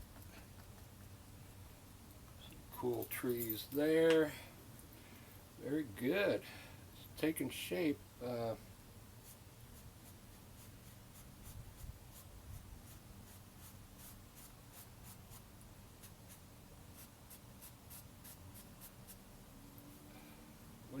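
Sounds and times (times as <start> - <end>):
paintbrush scratching on canvas: 9.2 - 19.2.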